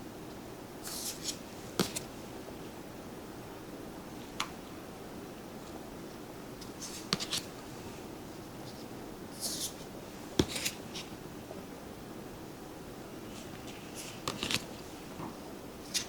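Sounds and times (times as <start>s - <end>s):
cards rustling: 0.8s - 2.1s, 6.6s - 7.6s, 8.7s - 11.1s, 13.3s - 14.9s
cards tapping down: 0.8s - 2.1s, 10.4s - 10.8s, 14.0s - 14.7s.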